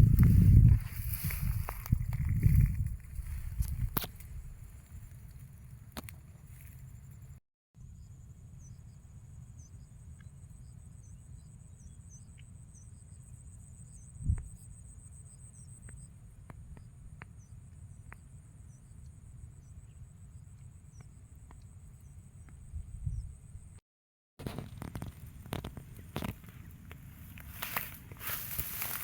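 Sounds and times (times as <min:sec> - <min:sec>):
insects trilling: 0:24.7 - 0:29.0.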